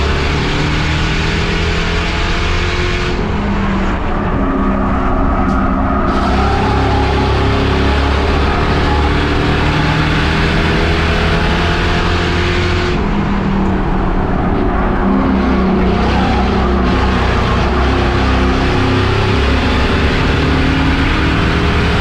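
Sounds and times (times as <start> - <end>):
race car engine revving: 0.0 - 22.0.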